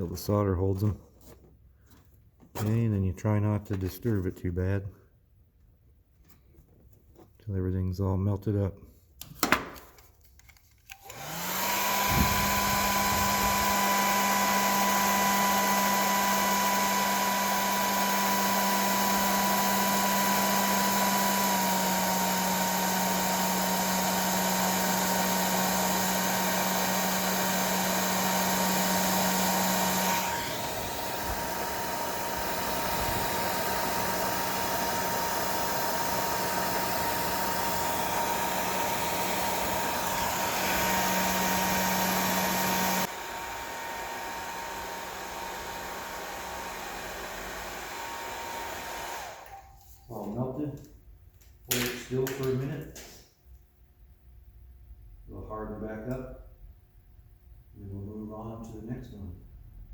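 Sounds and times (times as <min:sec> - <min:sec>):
heat gun blower whine: 0:10.8 - 0:50.3.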